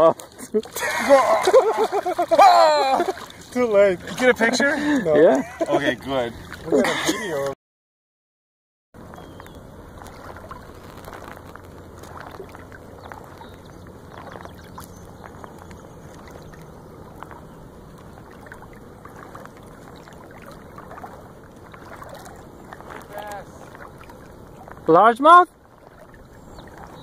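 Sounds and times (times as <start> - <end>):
river water lapping and splashing: 0.0 - 7.6, 9.0 - 27.0
small splashes and clicks: 0.0 - 7.6, 9.1 - 25.0, 25.6 - 27.0
steady low rumble: 9.0 - 24.9.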